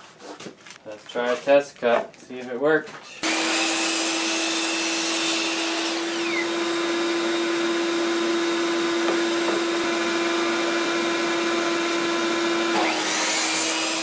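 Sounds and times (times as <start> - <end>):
miter saw motor whining: 3.2 - 14.0.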